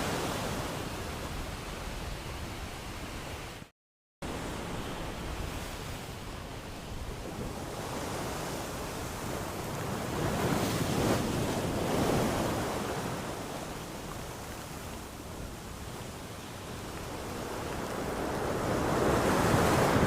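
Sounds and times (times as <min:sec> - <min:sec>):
ocean waves washing: 0:00.0 - 0:03.4, 0:04.2 - 0:20.0.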